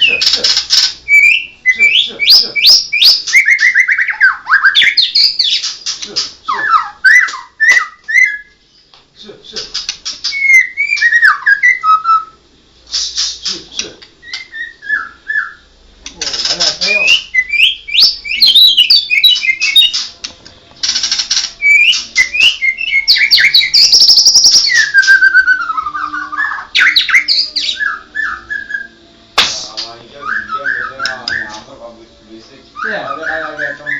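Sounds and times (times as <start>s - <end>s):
bird singing varied song: 0.0s - 9.0s, 9.7s - 12.4s, 13.0s - 33.9s.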